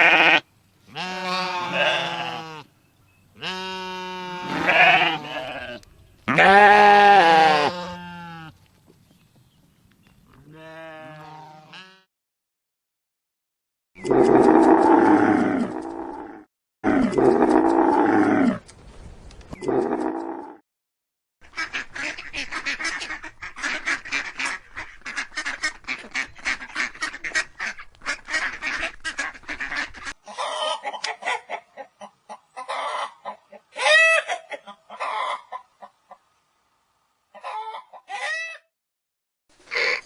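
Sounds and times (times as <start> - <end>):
flock of fowl calling: 21.6 - 36.0, 37.4 - 38.7.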